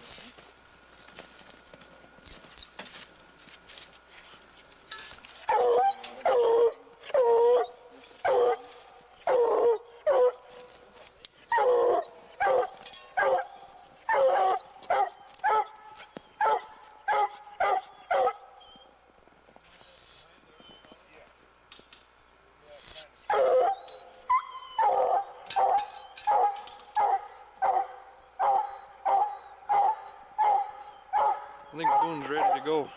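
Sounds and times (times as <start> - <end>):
dog barking: 5.5 - 6.7, 11.6 - 15.8, 16.4 - 18.4, 24.8 - 32.9.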